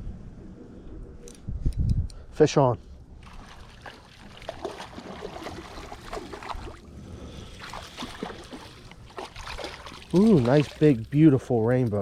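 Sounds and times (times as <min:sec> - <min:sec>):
fish thrashing at the surface: 0:03.2 - 0:06.8, 0:07.6 - 0:11.0
water splashing and trickling: 0:03.2 - 0:12.0.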